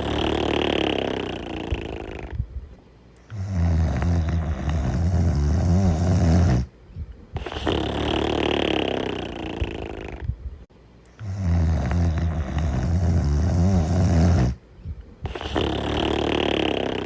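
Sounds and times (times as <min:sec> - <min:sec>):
buzzing snore: 0:00.0 - 0:02.4, 0:03.2 - 0:06.7, 0:07.4 - 0:10.3, 0:11.1 - 0:14.6, 0:15.2 - 0:17.0.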